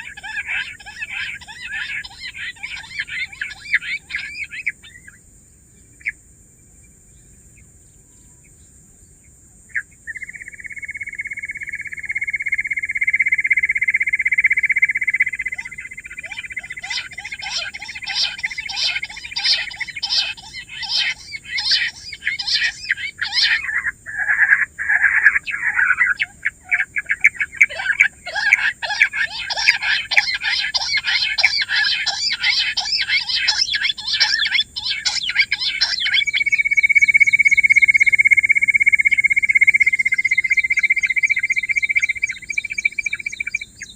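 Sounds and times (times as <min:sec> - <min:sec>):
quail chattering chorus: 0:00.0 - 0:05.1, 0:13.3 - 0:43.9
quail long even trill: 0:00.0 - 0:05.2, 0:09.7 - 0:43.9
quail repeated calls: 0:00.0 - 0:05.2, 0:13.0 - 0:43.9.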